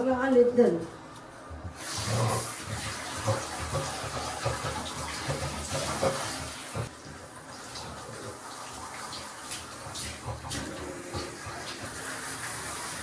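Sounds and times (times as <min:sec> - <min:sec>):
water running from a tap: 0:01.7 - 0:13.0.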